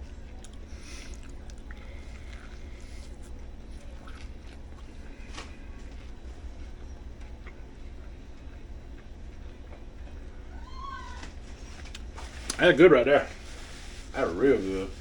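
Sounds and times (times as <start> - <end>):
man chewing: 0.0 - 8.1
steady low hum: 0.0 - 15.0.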